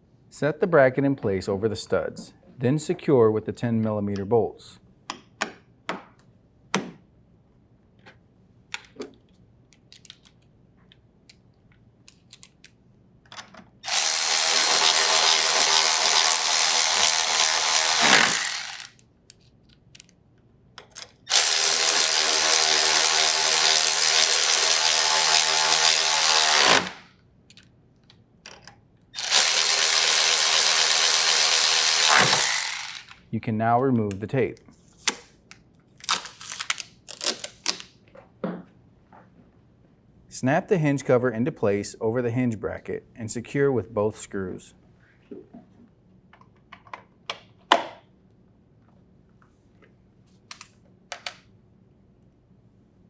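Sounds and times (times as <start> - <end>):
cordless drill driving bolts: 13.9 - 18.9, 21.3 - 27.0, 29.2 - 33.2.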